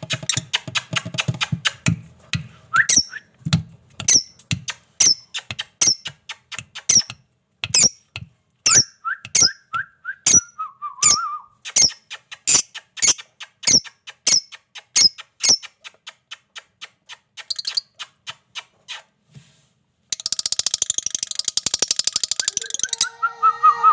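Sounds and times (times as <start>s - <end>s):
buzzy parrot chatter: 0.0s - 1.8s, 4.1s - 7.2s, 11.6s - 19.1s, 20.3s - 23.9s
parrots chirping shrilly: 5.0s - 7.1s, 8.7s - 9.6s, 10.3s - 15.9s, 20.3s - 23.9s.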